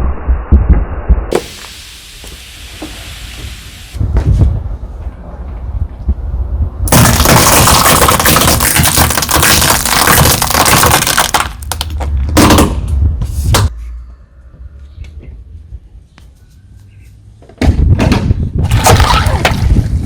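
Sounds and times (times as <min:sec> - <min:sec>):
car tyre low rumble: 0:03.4 - 0:06.9
objects crackling and breaking: 0:06.9 - 0:12.6, 0:18.7 - 0:19.6.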